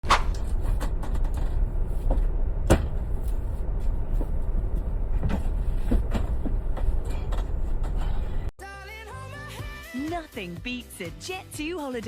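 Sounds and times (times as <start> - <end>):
knocks and clunks: 0.0 - 3.4, 4.2 - 8.5
airliner cabin rumble: 0.0 - 8.5.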